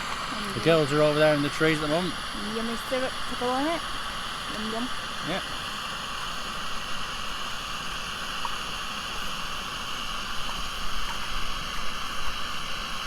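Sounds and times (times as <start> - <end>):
camping stove burner hissing: 0.0 - 13.0
pancake cooking in a pan: 0.0 - 13.0.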